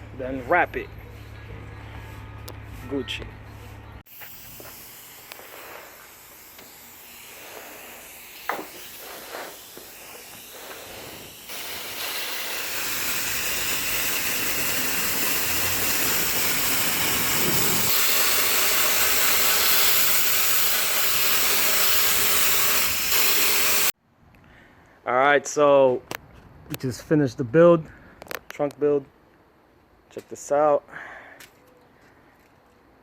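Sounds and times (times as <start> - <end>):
loud steady hiss: 4.1 - 24.0.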